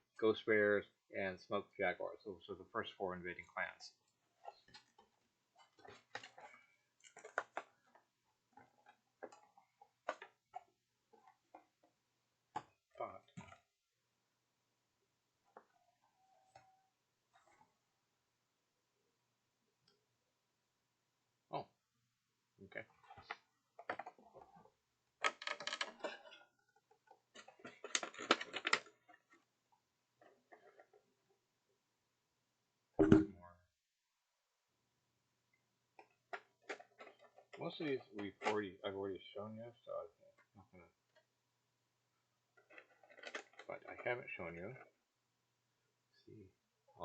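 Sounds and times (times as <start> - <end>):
paper and game pieces handled: 4.3 - 11.8, 25.2 - 29.5, 36.0 - 38.6, 42.5 - 44.1.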